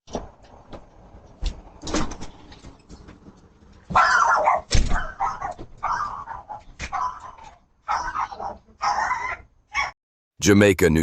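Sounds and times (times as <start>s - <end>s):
dog barking: 3.9s - 10.0s.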